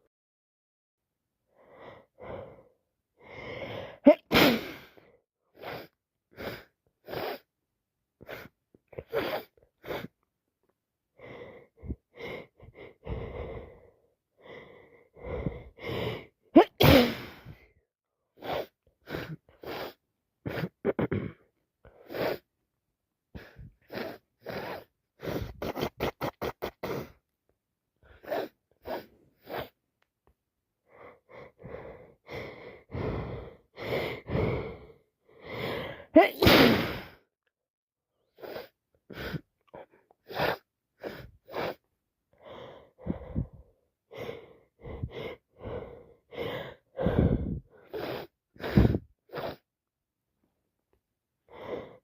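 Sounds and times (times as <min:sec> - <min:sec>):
sniffs and gasping breaths: 0:01.6 - 0:07.5, 0:11.2 - 0:17.7, 0:18.3 - 0:22.5, 0:23.3 - 0:27.2, 0:28.0 - 0:29.8, 0:30.8 - 0:37.3, 0:38.2 - 0:49.7, 0:51.5 - 0:52.0
woman sneezing: 0:04.1 - 0:04.8, 0:16.6 - 0:17.4, 0:36.2 - 0:37.2.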